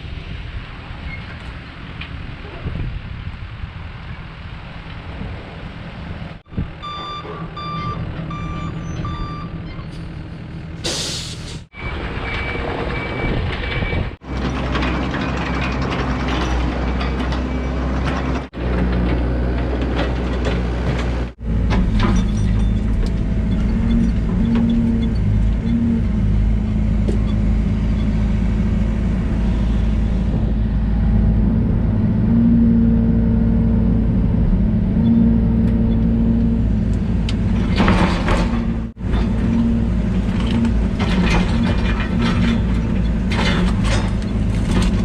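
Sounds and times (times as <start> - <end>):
heavy diesel machinery running: 0.0 - 45.0
beeping tone: 6.8 - 9.6
reversing alarm beeping: 6.8 - 9.6, 11.7 - 14.1
air brake hiss: 10.8 - 11.7.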